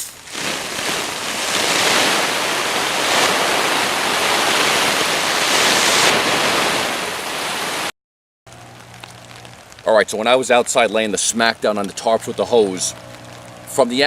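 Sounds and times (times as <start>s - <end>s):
hose spraying onto tarp: 0.0s - 7.9s.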